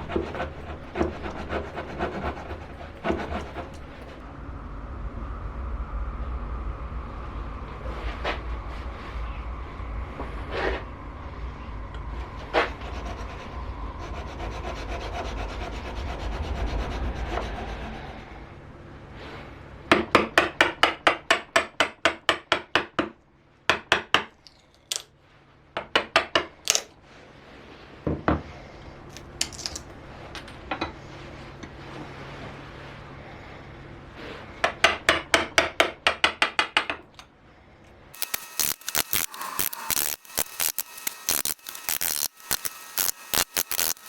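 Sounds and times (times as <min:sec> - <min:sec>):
rasp scraping wood: 0:00.0 - 0:04.2, 0:12.4 - 0:18.3, 0:38.2 - 0:44.0
short rasping strokes: 0:38.2 - 0:44.0.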